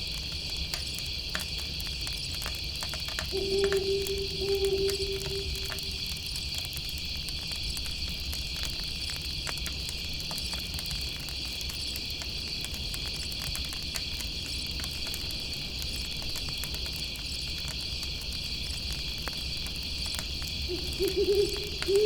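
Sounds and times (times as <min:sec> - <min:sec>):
campfire crackling: 0:00.0 - 0:22.0
crickets trilling: 0:00.0 - 0:22.0
owl hoot: 0:03.3 - 0:06.1, 0:20.7 - 0:22.0.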